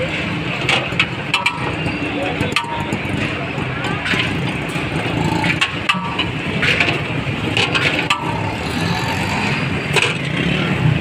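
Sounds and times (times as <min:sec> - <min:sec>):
street traffic: 0:00.0 - 0:11.0
sharp metallic clicks and clinks: 0:00.6 - 0:08.8.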